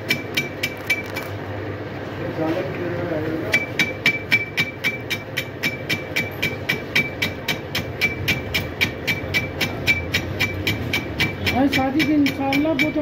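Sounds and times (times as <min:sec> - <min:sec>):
metallic ticking: 0:03.5 - 0:13.0.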